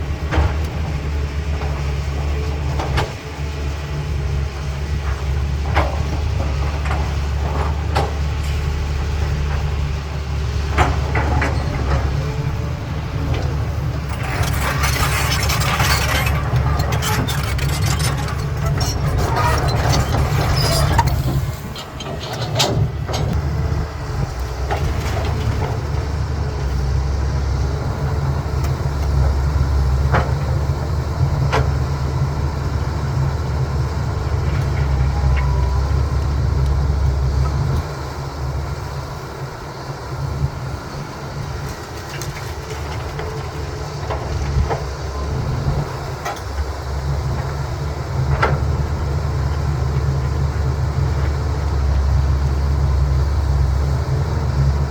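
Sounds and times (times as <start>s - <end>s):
excavator diesel engine: 0.0s - 54.9s
rock scraping and clattering: 13.4s - 22.6s.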